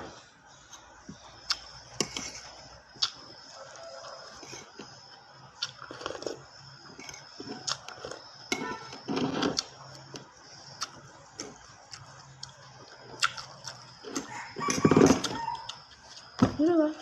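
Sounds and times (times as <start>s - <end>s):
faint high whine: 0.0s - 17.0s
chewing: 0.8s - 8.3s, 9.2s - 16.3s
crunchy bites: 2.9s - 16.4s.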